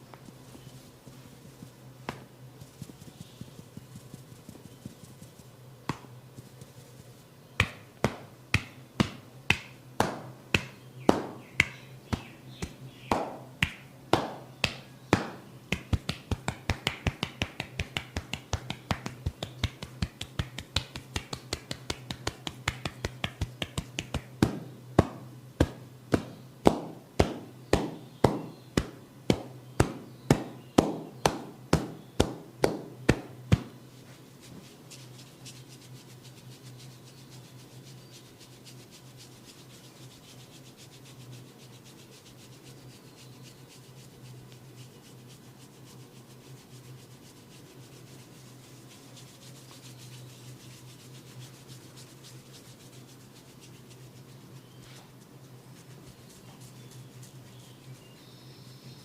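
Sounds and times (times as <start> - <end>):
percussive massage strikes tapping: 2.0 - 2.3, 5.9 - 6.1, 7.6 - 33.8.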